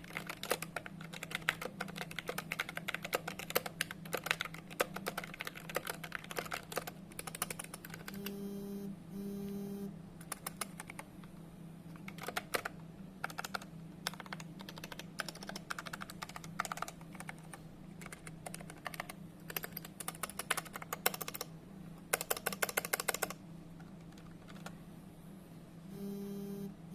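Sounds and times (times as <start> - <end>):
steady low hum: 0.0 - 26.9.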